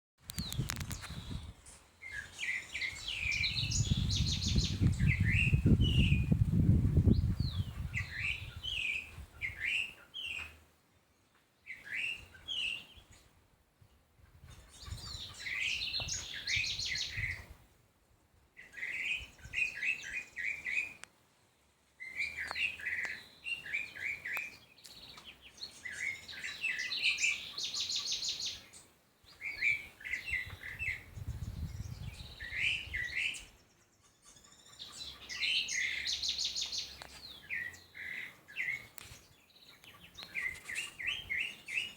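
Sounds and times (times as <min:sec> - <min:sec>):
songbird chirping and trilling: 0:00.2 - 0:17.6, 0:18.5 - 0:41.9.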